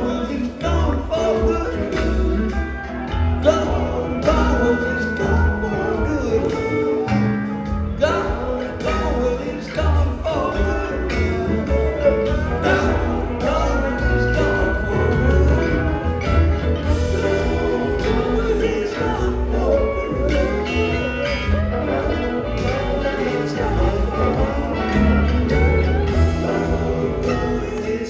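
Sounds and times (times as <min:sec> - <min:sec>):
person singing: 0:00.0 - 0:28.0
rock band playing: 0:00.0 - 0:28.0.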